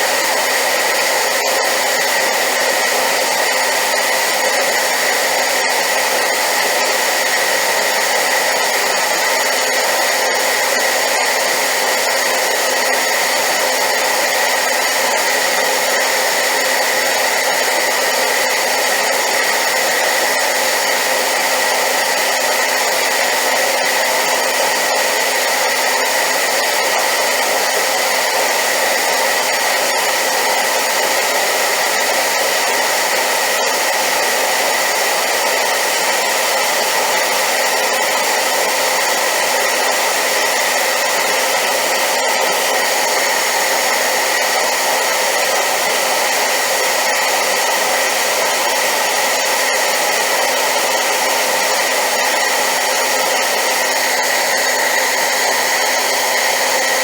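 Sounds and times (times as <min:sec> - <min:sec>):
hair dryer running: 0:00.0 - 0:57.0.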